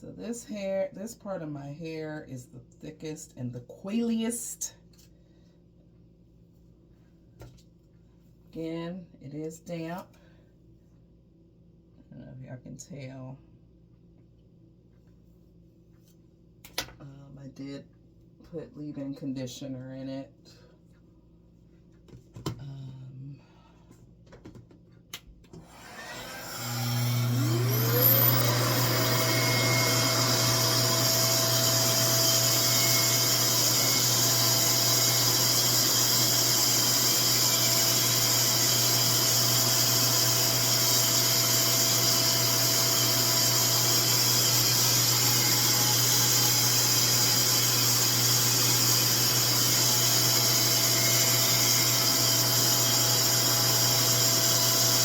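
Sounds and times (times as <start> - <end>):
hair dryer motor whine and air rush: 25.5 - 55.0.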